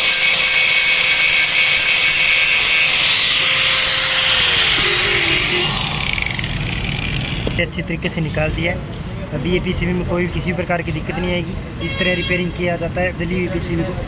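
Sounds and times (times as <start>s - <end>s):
hand-held power tool grinding: 0.0s - 7.6s.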